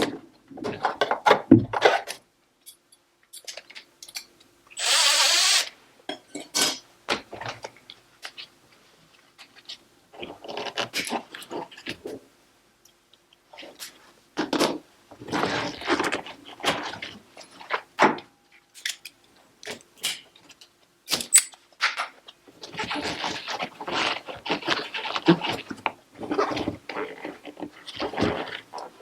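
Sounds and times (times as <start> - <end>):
tools clicking and knocking on parts: 0.8 - 4.9, 18.1 - 22.2.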